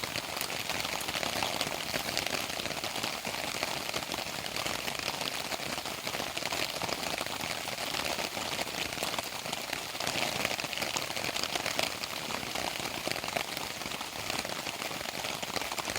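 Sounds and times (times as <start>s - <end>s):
steady rain falling: 0.0s - 15.9s.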